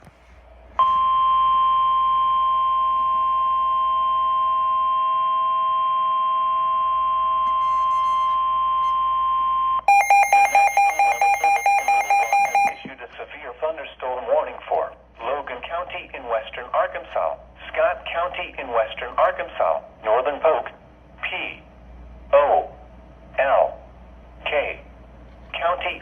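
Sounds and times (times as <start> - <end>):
steady electronic alert tone: 9.9 - 12.8
rapid pulsing two-pitch beep: 9.9 - 12.9.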